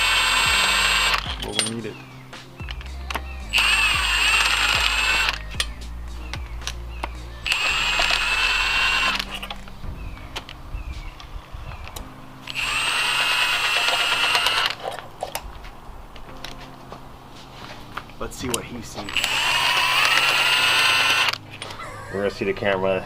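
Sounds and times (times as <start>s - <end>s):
impact wrench whine: 0.0s - 2.0s, 2.6s - 9.7s, 12.4s - 14.9s, 19.0s - 21.4s.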